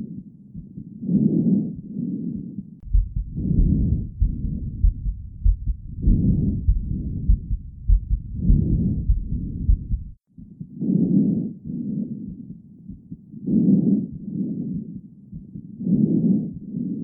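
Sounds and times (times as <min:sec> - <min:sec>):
low heartbeat thumps: 0:02.8 - 0:10.8, 0:11.6 - 0:16.8.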